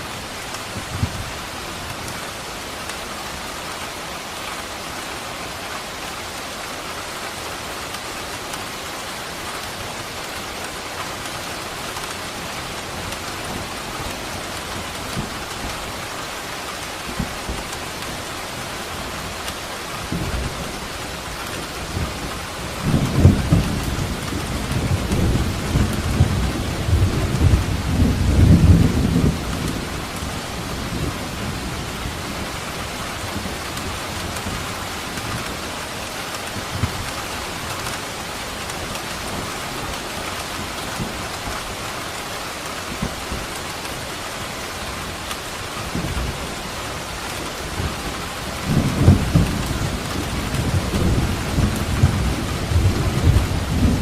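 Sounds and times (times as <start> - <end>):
rain falling: 0.0 - 54.0
thunder rolling: 47.4 - 54.0.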